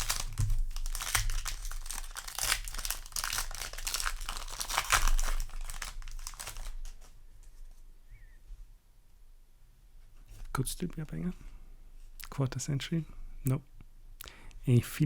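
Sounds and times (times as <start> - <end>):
foil wrapper crinkling: 0.0 - 7.2.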